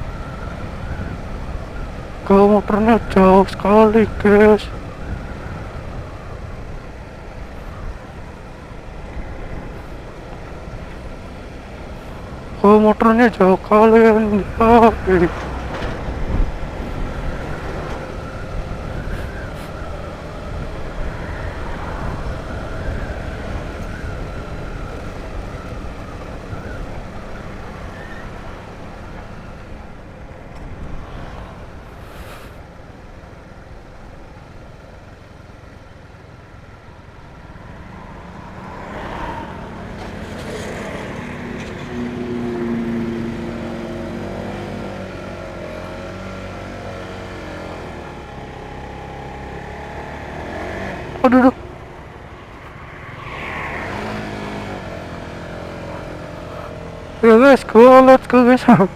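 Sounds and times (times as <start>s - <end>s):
road noise: 0.0s - 58.9s
motorcycle engine: 13.5s - 57.4s.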